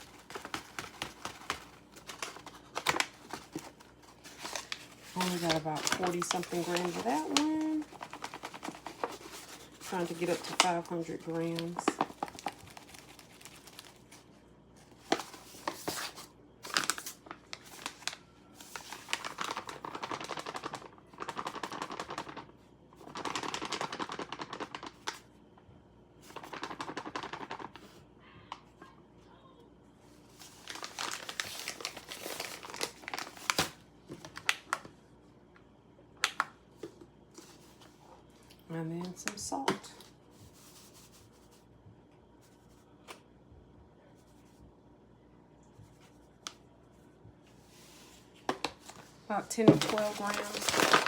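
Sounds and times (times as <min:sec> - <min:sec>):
flour bag crinkling: 0:00.0 - 0:25.3, 0:26.2 - 0:28.0, 0:30.2 - 0:34.9, 0:47.7 - 0:51.0.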